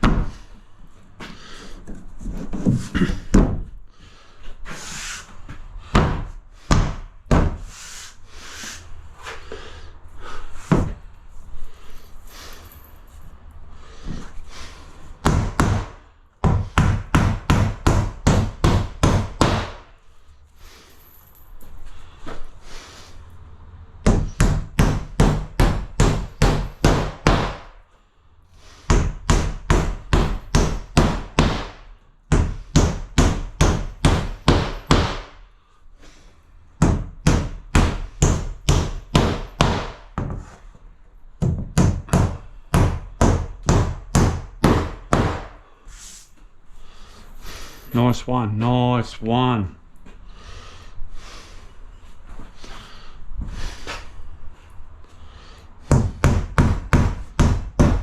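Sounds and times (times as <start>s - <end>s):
hammer driving nails: 5.9s - 7.7s, 15.2s - 19.9s, 24.0s - 27.8s, 28.9s - 35.4s, 36.8s - 40.5s, 41.4s - 45.7s, 55.8s - 58.0s.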